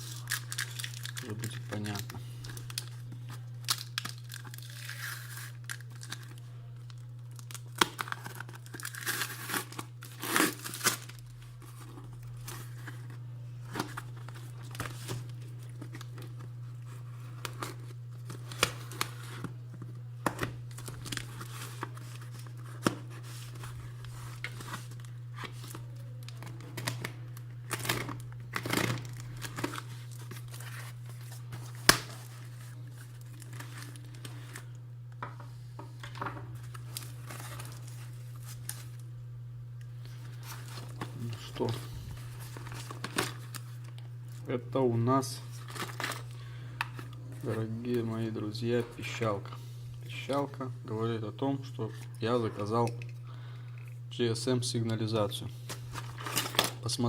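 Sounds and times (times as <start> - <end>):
packaging tearing and rustling: 0.0 - 34.8, 36.0 - 39.1, 40.0 - 44.4, 45.4 - 47.7, 55.7 - 56.9
steady low hum: 0.0 - 57.0.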